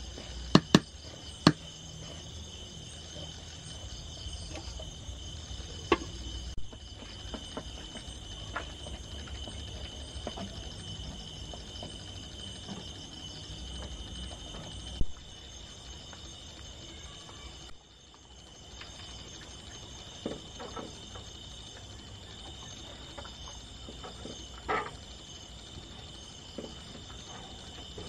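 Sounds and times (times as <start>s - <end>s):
insects chirring: 0.0s - 28.0s
sharp knocks: 0.5s - 1.6s.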